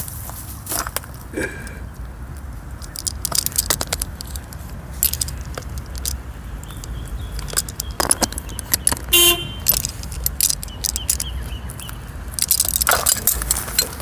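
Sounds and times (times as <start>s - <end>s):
metallic clinks of tools: 2.8s - 14.0s.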